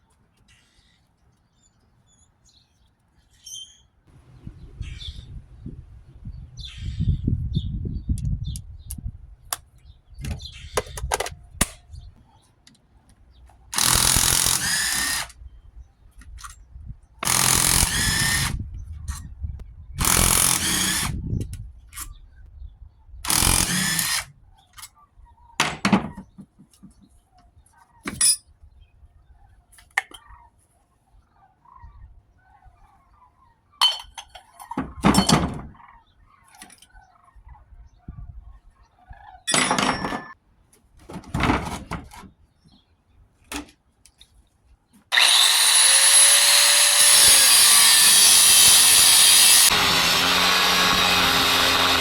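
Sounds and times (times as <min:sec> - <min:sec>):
power tool bursts: 0:13.8 - 0:15.3, 0:17.2 - 0:18.6, 0:20.0 - 0:21.2, 0:23.3 - 0:24.3, 0:45.1 - 0:52.0.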